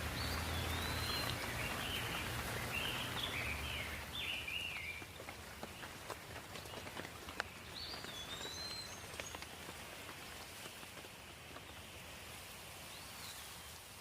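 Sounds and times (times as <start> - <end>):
drops ticking: 0.0 - 11.8
gentle rain: 0.0 - 14.0
bird chirps: 0.1 - 5.9, 6.6 - 9.6.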